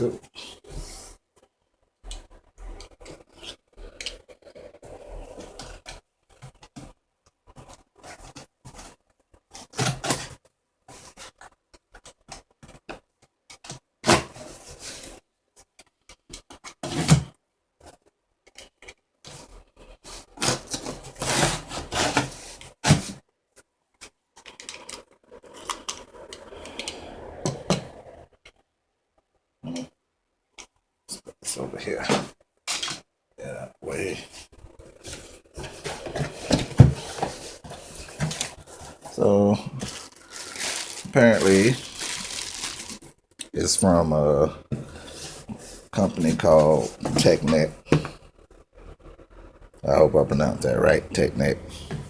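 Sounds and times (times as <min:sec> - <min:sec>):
cardboard scraping and tearing: 0:20.0 - 0:23.2, 0:35.0 - 0:43.1.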